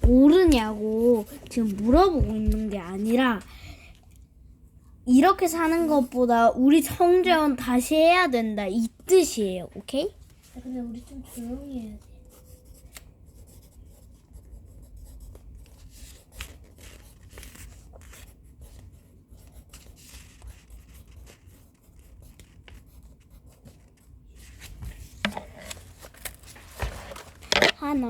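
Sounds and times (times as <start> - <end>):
low room hum: 0.0 - 28.0
pencil writing on paper: 11.2 - 24.2.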